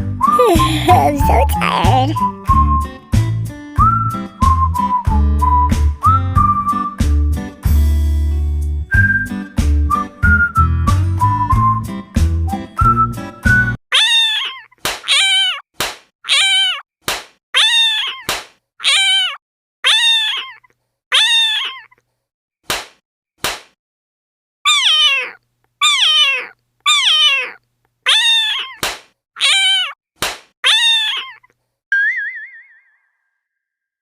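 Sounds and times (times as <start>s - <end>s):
cat meowing: 13.9s - 15.6s, 16.3s - 16.8s, 17.6s - 22.0s, 24.7s - 28.8s, 29.4s - 30.0s, 30.6s - 31.5s.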